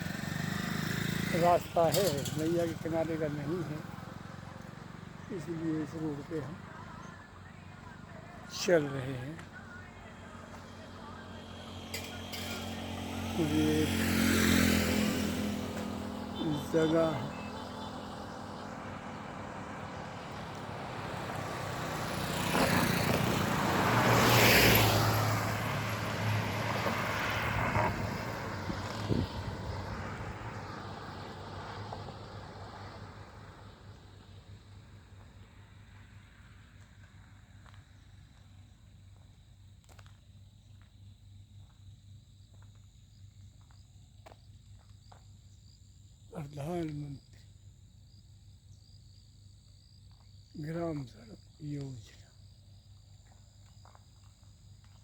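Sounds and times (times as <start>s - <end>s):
road vehicle passing: 0.0s - 38.7s.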